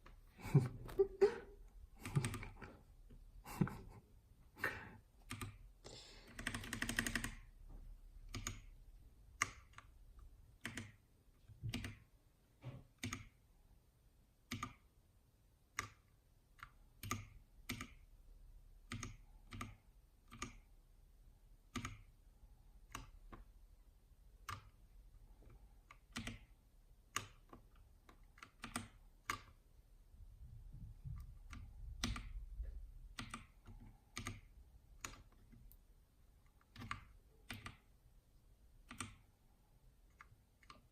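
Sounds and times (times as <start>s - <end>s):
mechanical keyboard keystrokes: 6.3s - 7.5s, 8.3s - 8.7s, 10.6s - 11.0s, 11.7s - 12.1s, 25.8s - 29.6s, 31.2s - 32.4s, 36.6s - 37.9s.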